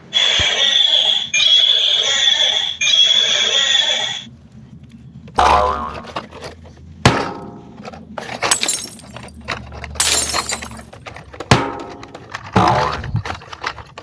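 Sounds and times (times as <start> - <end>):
crashing shattering bursts: 8.4 - 9.4, 10.0 - 11.0.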